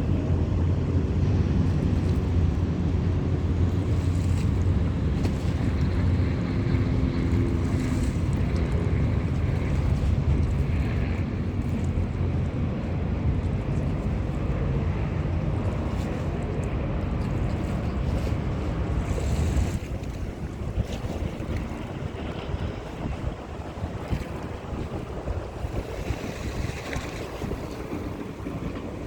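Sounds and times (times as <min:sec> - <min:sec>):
wind buffeting microphone: 0:00.0 - 0:29.0
river flowing: 0:14.4 - 0:29.0.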